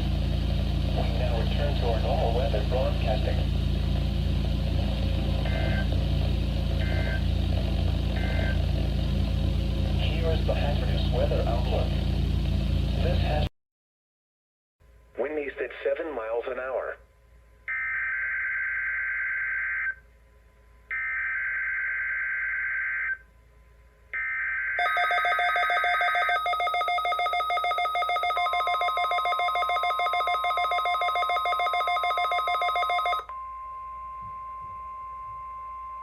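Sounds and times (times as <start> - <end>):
pulsing multi-tone alarm: 5.4 - 5.9, 6.8 - 7.2, 8.2 - 8.6, 17.7 - 20.0, 20.9 - 23.2, 24.2 - 33.3
steady warning alarm tone: 5.4 - 5.9, 6.8 - 7.3, 8.2 - 8.6, 24.2 - 33.6.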